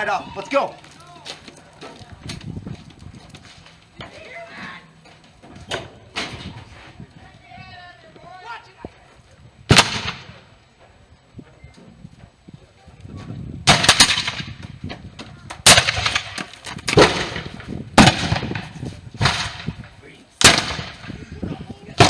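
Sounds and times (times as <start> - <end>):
muskets firing: 9.7 - 10.5, 13.7 - 14.7, 15.6 - 21.3.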